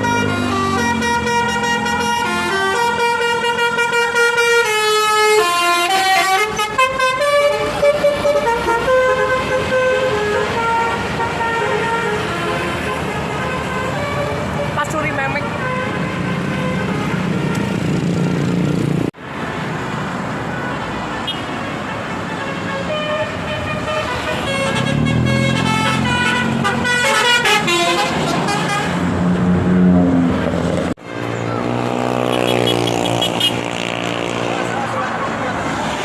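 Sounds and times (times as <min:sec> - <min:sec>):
musical bus horns playing tunes: 0:00.0 - 0:18.6, 0:20.5 - 0:29.3, 0:31.0 - 0:33.9.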